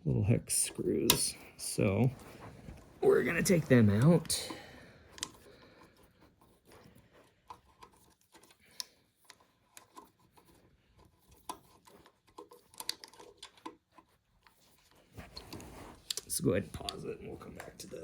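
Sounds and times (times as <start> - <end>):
hex key clicks and scrapes: 9.2 - 14.1.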